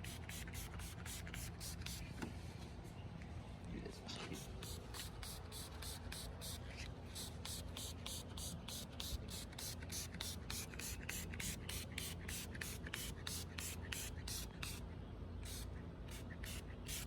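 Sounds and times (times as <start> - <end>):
spray bottle spritzes: 15.5 - 17.0.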